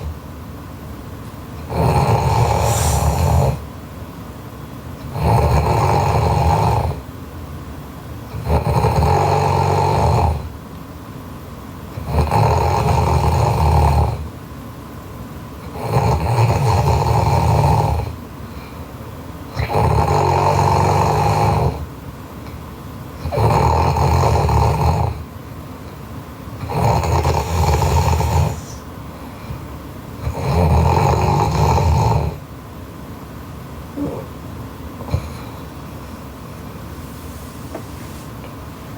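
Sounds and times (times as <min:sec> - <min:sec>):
woman snoring loudly: 0:01.6 - 0:03.6, 0:05.0 - 0:07.0, 0:08.3 - 0:10.5, 0:12.0 - 0:14.2, 0:15.6 - 0:18.2, 0:19.6 - 0:21.9, 0:23.2 - 0:25.2, 0:26.6 - 0:28.9, 0:30.2 - 0:32.4, 0:34.0 - 0:34.4.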